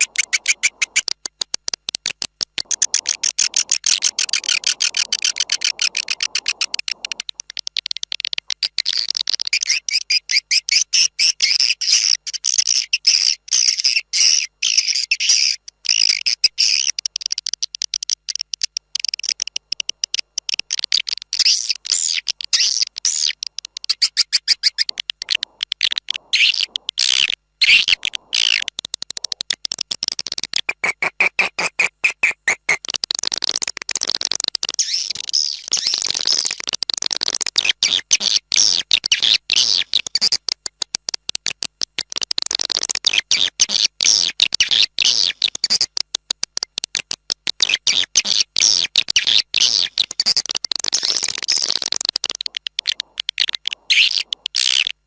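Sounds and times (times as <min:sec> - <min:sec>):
high twittering chirps: 0:00.0 - 0:01.1, 0:02.6 - 0:29.5, 0:34.7 - 0:36.6, 0:49.1 - 0:55.0.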